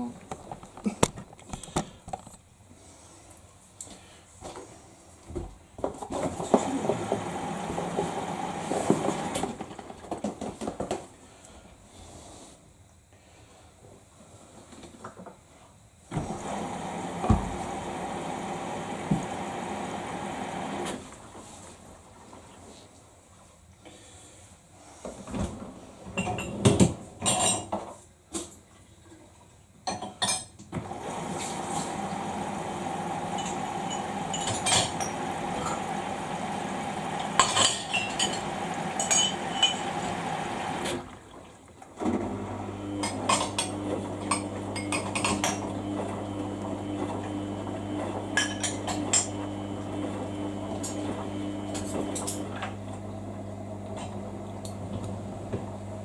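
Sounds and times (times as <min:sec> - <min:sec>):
washing machine motor hum: 0:05.5 - 0:10.8, 0:16.0 - 0:22.6, 0:30.7 - 0:56.0.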